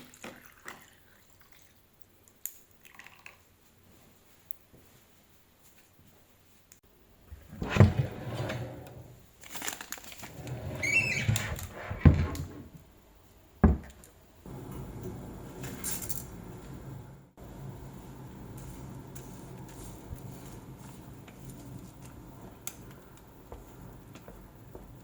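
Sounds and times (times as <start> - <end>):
pot of water boiling: 0.0 - 3.6
kitchen knocks and rustles: 13.6 - 14.0.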